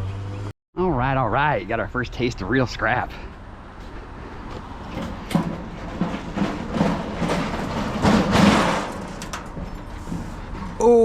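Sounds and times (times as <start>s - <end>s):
scrap metal clanking: 4.3s - 10.8s.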